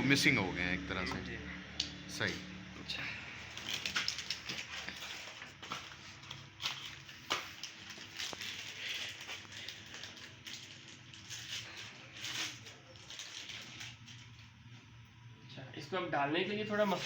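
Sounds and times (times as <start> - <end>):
engine parts clicking and rustling: 3.4 - 14.7.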